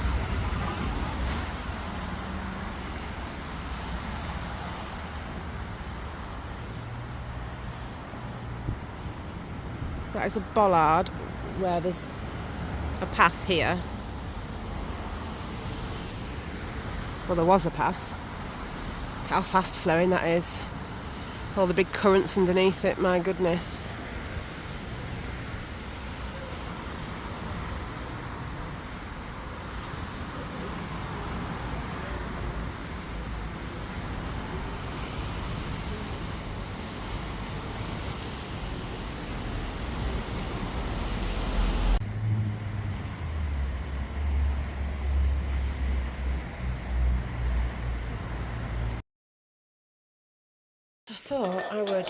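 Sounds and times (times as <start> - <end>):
road traffic rumble: 0.0 - 49.0.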